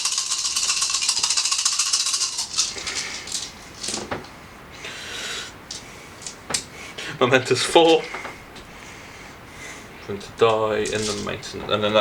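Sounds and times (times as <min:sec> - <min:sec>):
dice rattling in hand: 0:00.0 - 0:04.0.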